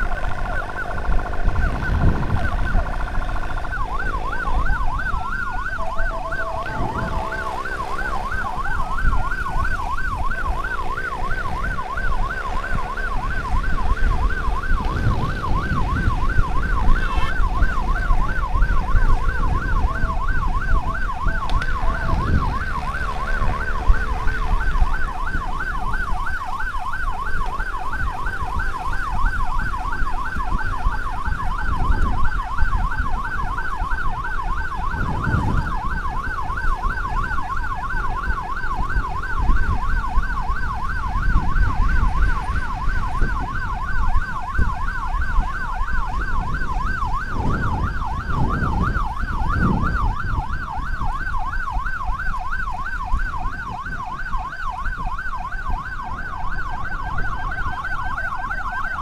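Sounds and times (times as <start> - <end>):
emergency siren yelping: 0.0 - 59.0
low rumble of road noise: 0.0 - 59.0.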